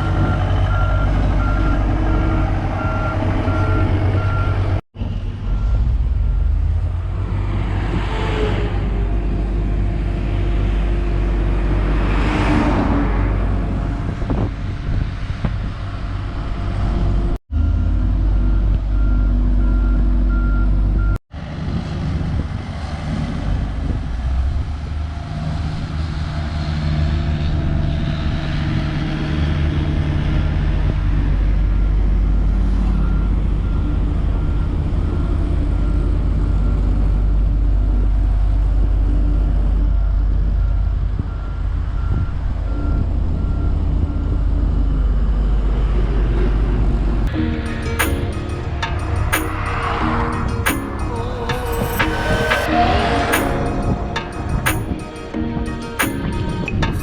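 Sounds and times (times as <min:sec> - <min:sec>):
reversing alarm beeping: 0:00.0 - 0:04.8, 0:17.6 - 0:21.2
diesel engines rumbling: 0:00.0 - 0:57.0.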